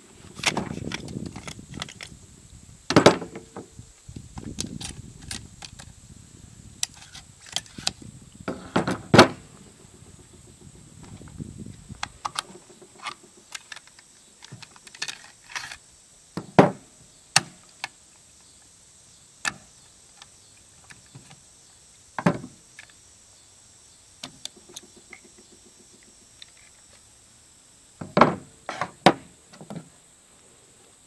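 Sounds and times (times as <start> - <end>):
rifle parts clicking and knocking: 12.0 - 15.8.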